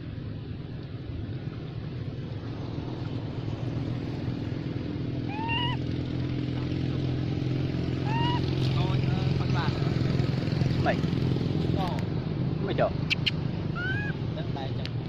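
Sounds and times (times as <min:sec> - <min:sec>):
steady motor hum: 0:00.0 - 0:15.0
baby monkey crying: 0:05.2 - 0:05.9, 0:08.0 - 0:08.6, 0:13.1 - 0:14.3.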